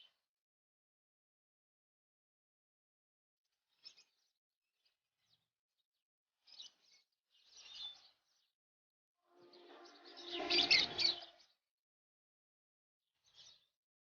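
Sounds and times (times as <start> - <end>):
birds chirping: 9.4 - 11.5.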